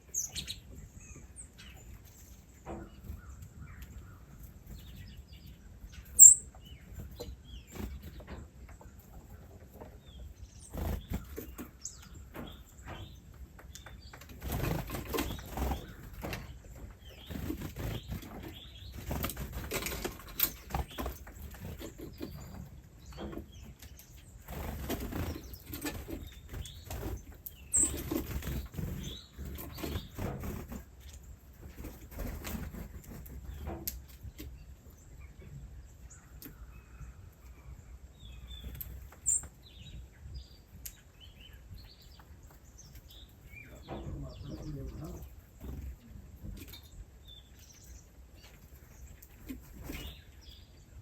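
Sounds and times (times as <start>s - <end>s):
birds flapping wings: 14.2s - 16.5s, 17.2s - 22.0s, 24.4s - 30.9s.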